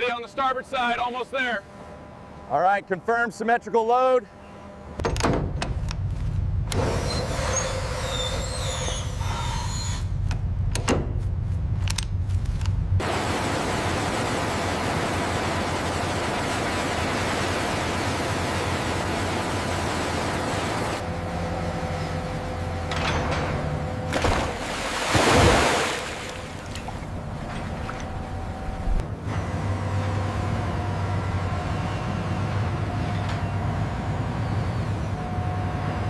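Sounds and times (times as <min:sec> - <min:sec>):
heavy machinery rumble: 0:04.6 - 0:36.0
machinery squeaks and clicks: 0:06.8 - 0:10.4.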